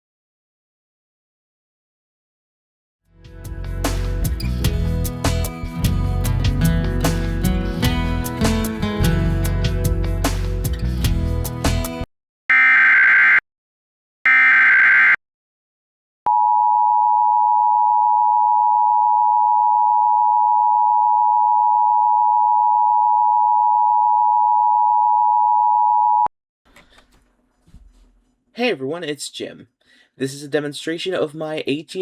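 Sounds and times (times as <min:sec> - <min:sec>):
music: 0:03.1 - 0:12.1
digital data bursts: 0:14.3 - 0:15.2.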